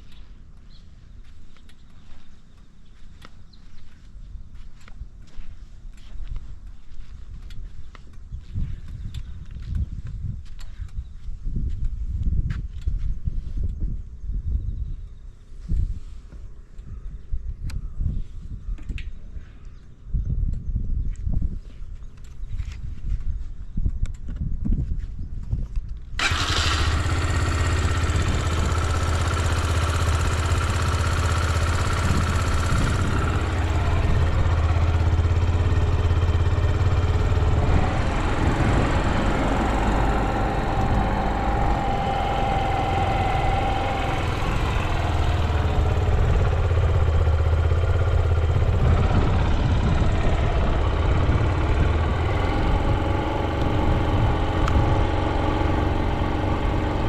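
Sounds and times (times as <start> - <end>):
motorcycle engine running: 26.2 - 57.0.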